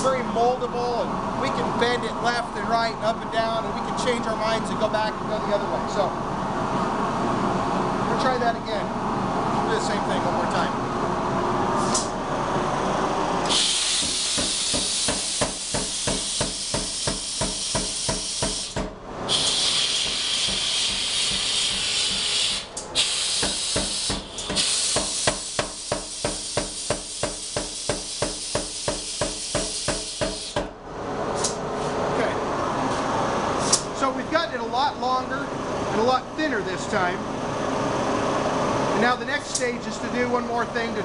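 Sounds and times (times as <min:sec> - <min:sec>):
loud hiss: 0:13.4 - 0:30.6
power hammer striking hot steel: 0:13.4 - 0:30.8.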